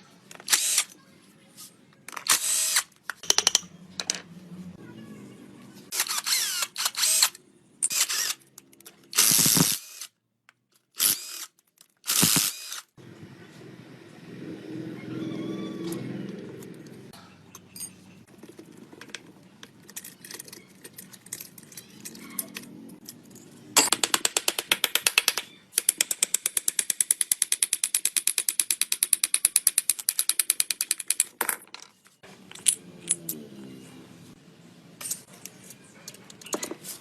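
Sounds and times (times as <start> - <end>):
tool taps and clicks: 3.1 - 3.7
ratchet wrench clicking: 12.1 - 12.8.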